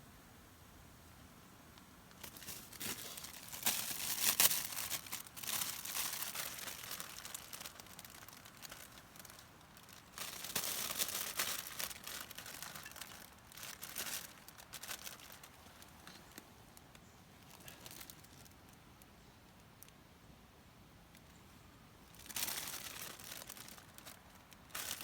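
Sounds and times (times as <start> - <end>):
crinkling and rustling: 2.1 - 18.8, 22.1 - 25.0
sharp crackles: 2.1 - 18.8, 22.1 - 25.0.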